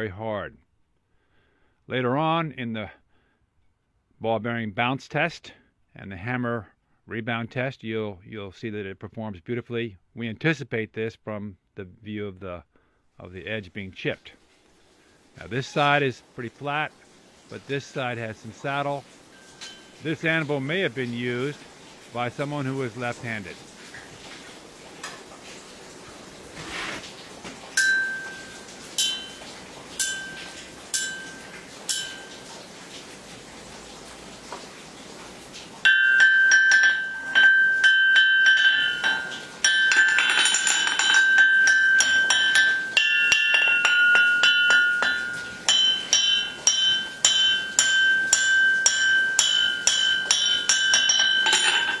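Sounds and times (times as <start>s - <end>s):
anvil ringing under strikes: 27.8s - 29.4s, 30.0s - 32.4s, 35.9s - 52.0s
rapid bounces on anvil: 29.0s - 29.4s, 35.9s - 52.0s.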